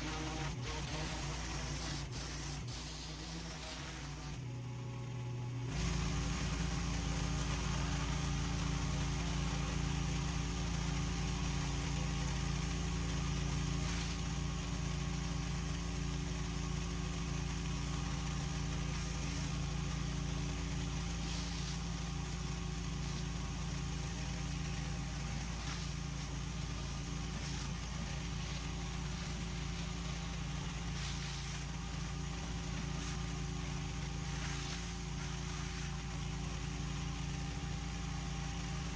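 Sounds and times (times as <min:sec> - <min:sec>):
high-pressure water spraying: 0:00.0 - 0:04.4, 0:05.7 - 0:38.9
pressure washer engine running: 0:00.0 - 0:38.9.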